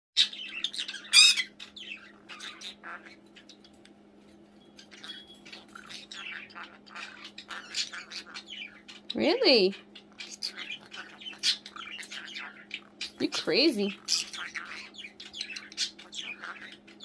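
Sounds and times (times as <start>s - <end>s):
bird chirping and squawking: 0.2s - 17.0s
low steady hum: 0.2s - 17.0s.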